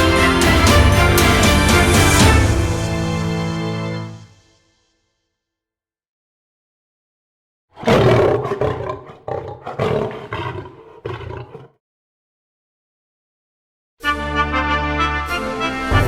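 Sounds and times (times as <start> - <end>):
animal roaring: 7.8 - 11.8.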